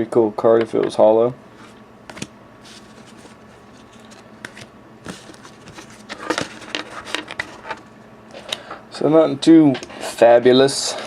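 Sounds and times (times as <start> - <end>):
trading cards shuffling: 1.6 - 8.5.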